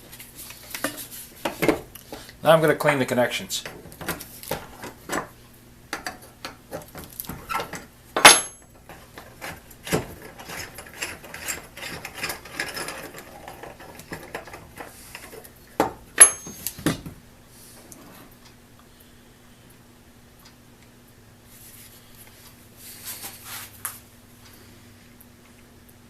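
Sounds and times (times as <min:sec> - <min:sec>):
tools clicking and knocking: 0:05.9 - 0:17.1
scraping and rubbing: 0:09.0 - 0:15.4
sharp metal clinks: 0:16.2 - 0:16.7.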